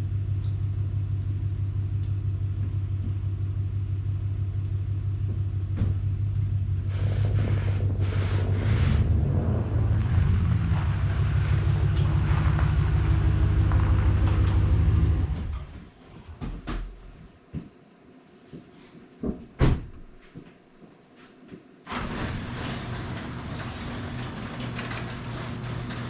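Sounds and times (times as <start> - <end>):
tractor engine running: 0.0 - 15.7
knocks and clanks: 10.0 - 16.9.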